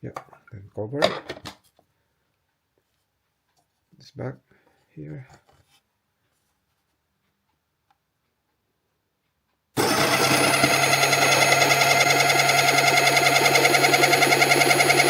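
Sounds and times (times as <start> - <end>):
coffee grinder running: 9.8 - 15.0.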